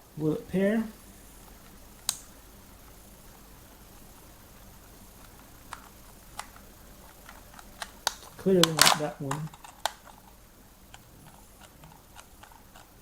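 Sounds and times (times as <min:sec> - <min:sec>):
faint room hiss: 0:00.0 - 0:13.0
plastic clicks: 0:01.6 - 0:03.4, 0:04.2 - 0:13.0.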